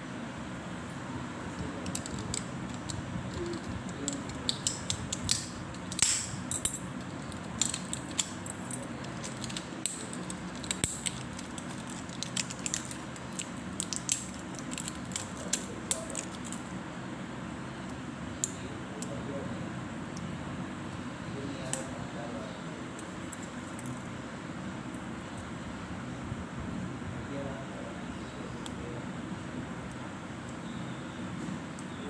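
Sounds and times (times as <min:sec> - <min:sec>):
low background noise: 0:00.0 - 0:32.0.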